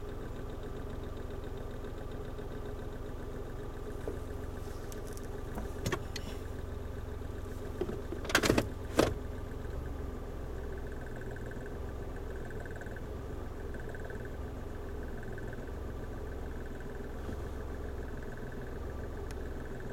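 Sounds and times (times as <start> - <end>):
vehicle engine idling: 0.0 - 19.9
sharp clicks and knocks: 4.9 - 6.3, 7.7 - 9.2.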